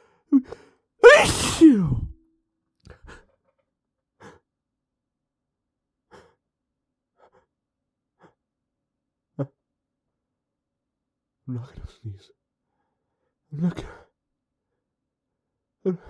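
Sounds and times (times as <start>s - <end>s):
faint short breaths: 1.0s - 2.0s
man sneezing: 1.0s - 2.1s.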